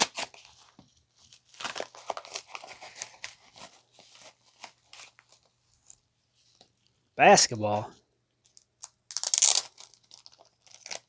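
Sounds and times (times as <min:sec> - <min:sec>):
packaging crinkling and tearing: 0:00.0 - 0:06.0, 0:08.5 - 0:11.0.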